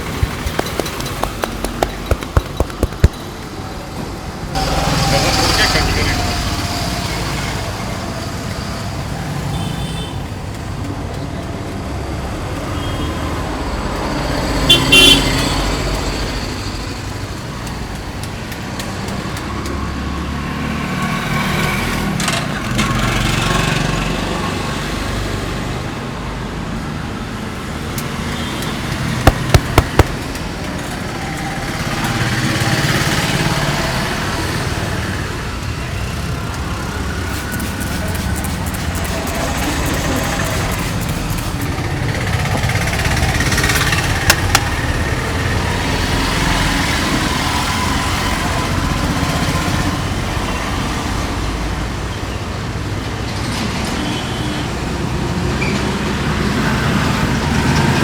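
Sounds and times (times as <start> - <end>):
street traffic noise: 0.0 - 58.0
sharp clicks: 0.1 - 3.2, 29.3 - 30.2.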